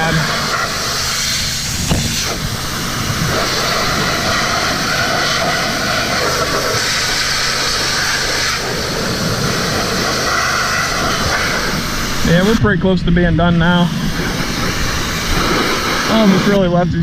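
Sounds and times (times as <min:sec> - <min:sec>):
washer motor humming: 0:00.0 - 0:12.5
pressure washer water jet hissing: 0:00.0 - 0:17.0.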